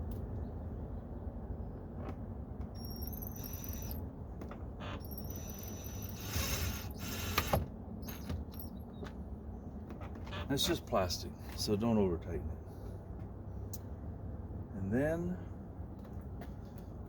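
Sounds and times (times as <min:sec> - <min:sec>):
drill rattling: 0:02.8 - 0:04.0, 0:04.8 - 0:08.8
power drill driving screws: 0:02.9 - 0:04.0, 0:04.9 - 0:08.7.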